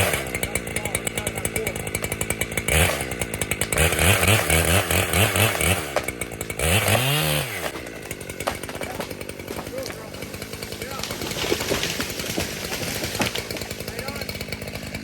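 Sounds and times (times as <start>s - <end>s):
chainsaw idling and revving: 0.0s - 15.0s.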